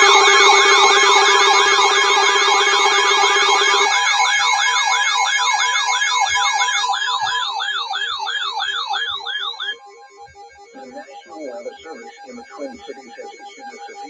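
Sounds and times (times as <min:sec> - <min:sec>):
electronic siren wail: 0:00.0 - 0:09.8.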